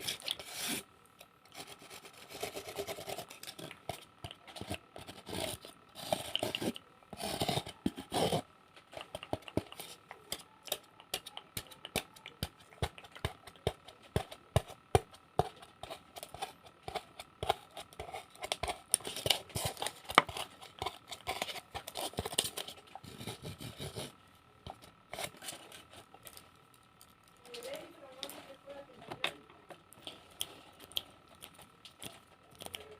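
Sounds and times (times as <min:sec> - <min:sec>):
faint high hum: 0:00.0 - 0:32.9
tapping and clicking on objects: 0:08.8 - 0:21.0.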